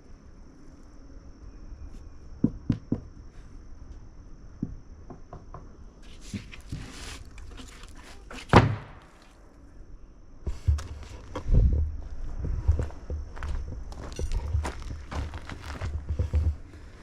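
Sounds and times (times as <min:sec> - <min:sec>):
rustling scrape: 0:06.0 - 0:08.5
footsteps: 0:10.5 - 0:17.0.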